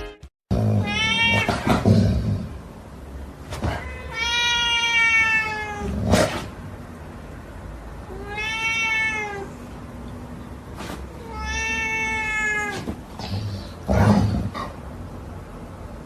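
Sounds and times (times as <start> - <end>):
cat meowing: 0.8 - 1.8, 3.6 - 5.9, 8.1 - 9.6, 11.1 - 13.0.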